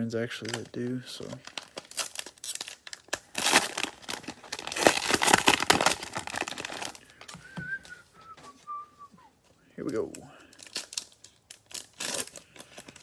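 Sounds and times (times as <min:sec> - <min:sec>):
cellophane wrapper crinkling and tearing: 0:00.0 - 0:07.4, 0:10.0 - 0:13.0.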